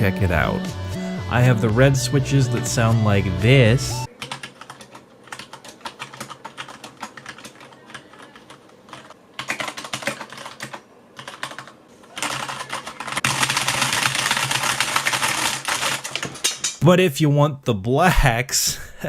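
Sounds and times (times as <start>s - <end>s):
typing on mechanical keyboard: 4.1s - 16.4s.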